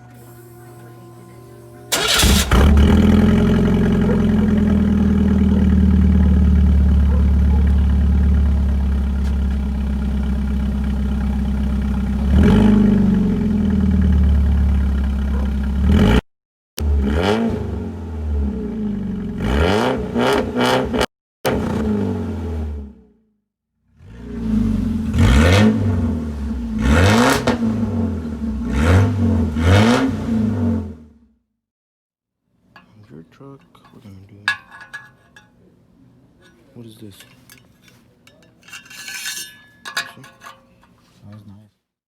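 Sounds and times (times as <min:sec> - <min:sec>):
loud pickup engine idling and revving: 0:02.2 - 0:16.2, 0:16.8 - 0:22.9, 0:23.9 - 0:31.2.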